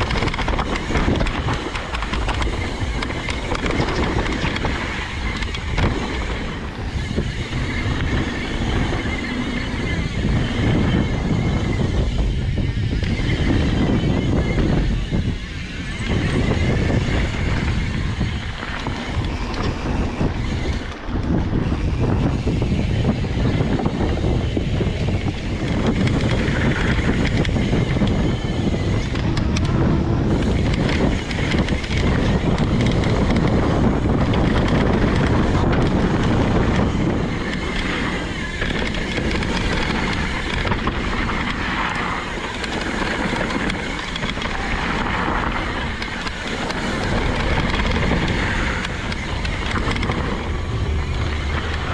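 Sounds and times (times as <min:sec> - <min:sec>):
mountain bike rattle and tyre noise: 0:00.0 - 0:51.9
wind on microphone: 0:00.0 - 0:51.9.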